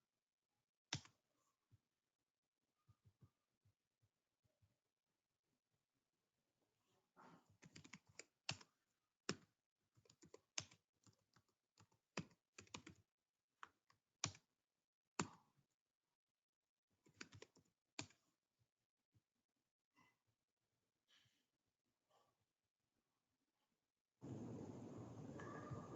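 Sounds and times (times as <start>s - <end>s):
computer keyboard typing: 7.6s - 8.7s, 11.8s - 13.0s, 17.1s - 17.6s.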